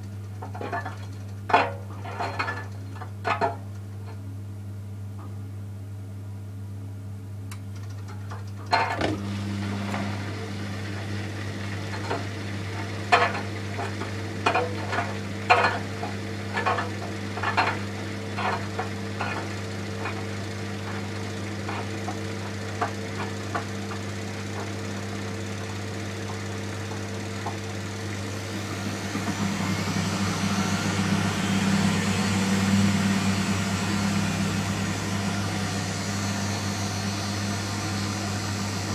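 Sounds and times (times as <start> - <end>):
washing machine motor humming: 8.4 - 38.9.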